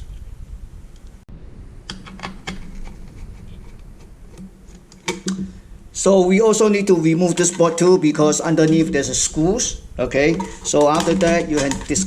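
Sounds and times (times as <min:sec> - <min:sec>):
screwdriver clicking on metal: 0:10.2 - 0:12.0.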